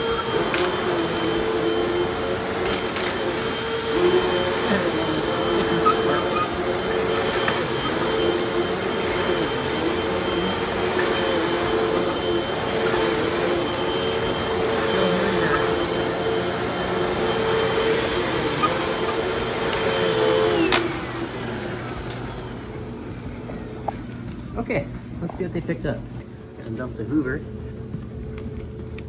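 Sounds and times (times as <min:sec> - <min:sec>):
vacuum cleaner running: 0:00.0 - 0:29.0.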